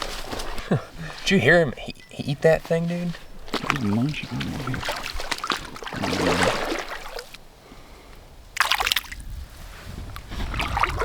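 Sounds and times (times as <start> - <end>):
fish splashing at water surface: 3.3 - 7.4, 8.6 - 9.2.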